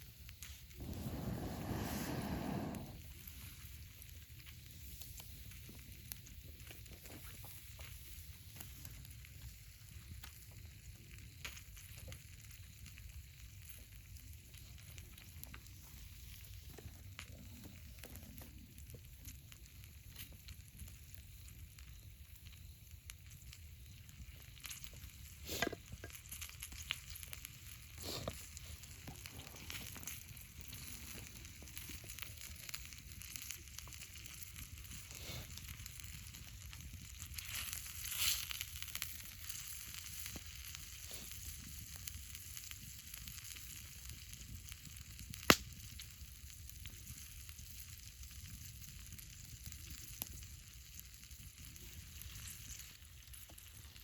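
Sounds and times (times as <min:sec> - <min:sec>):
food sizzling in a pan: 0:00.0 - 0:03.7, 0:23.8 - 0:54.0.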